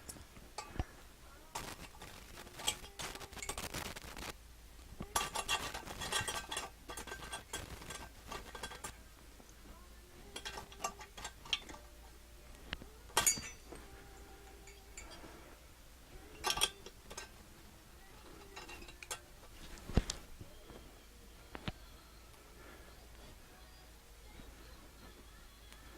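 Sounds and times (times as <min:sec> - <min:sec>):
metal parts and tools clinking: 0:01.5 - 0:04.3, 0:05.0 - 0:09.1, 0:10.2 - 0:12.1, 0:13.1 - 0:15.4, 0:16.2 - 0:20.3.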